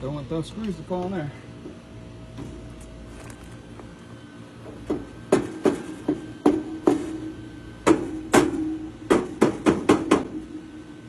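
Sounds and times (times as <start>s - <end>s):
knocks on sheet-metal cabinet: 4.9s - 7.2s, 7.8s - 10.4s.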